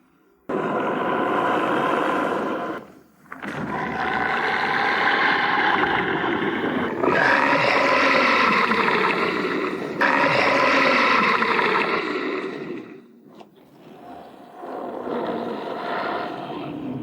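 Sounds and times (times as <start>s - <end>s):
monster roar: 3.4s - 13.1s.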